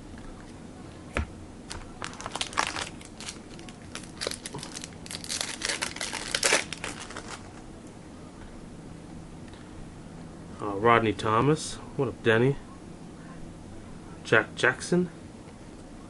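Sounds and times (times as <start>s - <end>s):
plastic wrapper crinkling and tearing: 1.7s - 7.6s.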